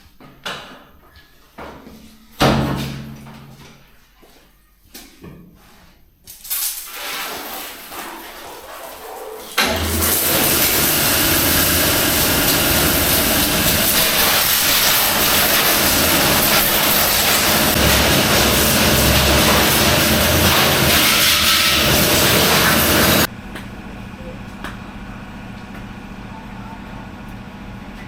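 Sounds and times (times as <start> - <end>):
high-pressure spray hissing: 9.8 - 23.3
low motor hum: 9.9 - 28.0.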